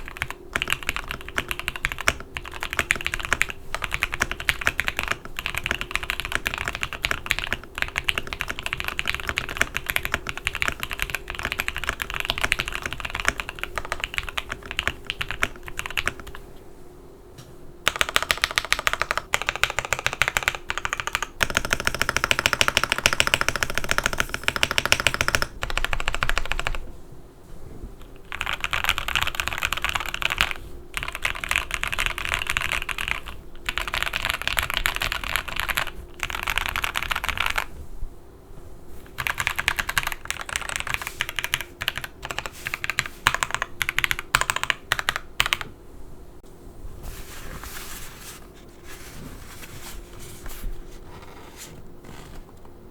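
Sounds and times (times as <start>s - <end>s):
typing on mechanical keyboard: 0.0s - 16.4s, 17.9s - 26.8s, 28.1s - 37.7s, 39.1s - 45.7s.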